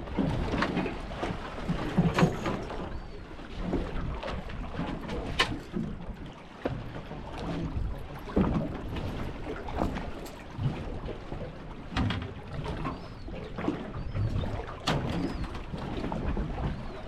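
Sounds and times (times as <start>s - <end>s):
water slapping against boat hull: 0.0s - 17.0s
knocks on boat: 11.9s - 12.9s, 14.2s - 15.5s.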